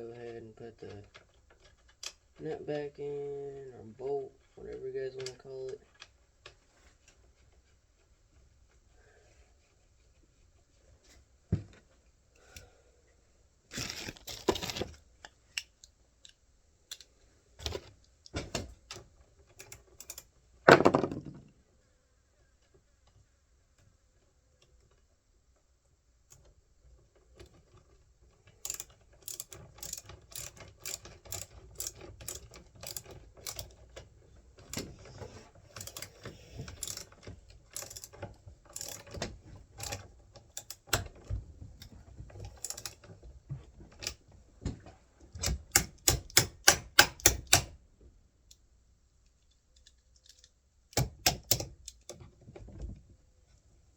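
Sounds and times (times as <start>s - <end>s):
metal parts and tools clattering: 19.6s - 21.3s, 28.6s - 33.9s, 34.6s - 41.2s, 41.8s - 43.1s
quick irregular clicking of nut: 28.6s - 33.8s, 35.7s - 41.2s, 45.4s - 47.8s.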